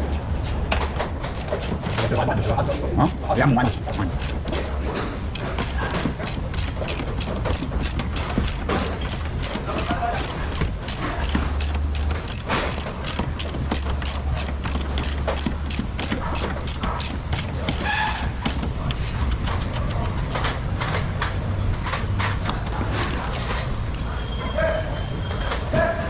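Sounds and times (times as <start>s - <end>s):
rapid sharp clicking: 5.3s - 24.1s.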